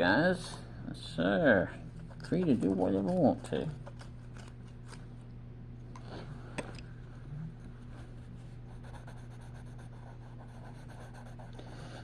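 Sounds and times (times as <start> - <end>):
steady low hum: 0.0 - 12.0
coloring strokes scratching on paper: 7.9 - 12.0.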